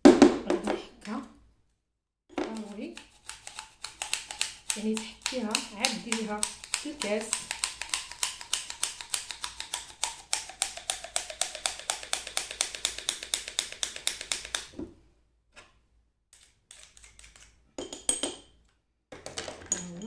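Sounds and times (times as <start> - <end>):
garlic scraping on grater: 2.5 - 11.1.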